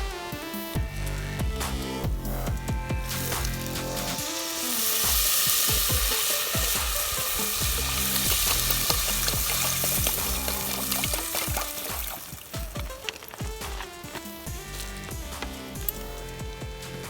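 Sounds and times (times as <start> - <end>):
food sizzling in oil: 3.1 - 14.8
stirring clicks and scrapes: 3.1 - 17.0.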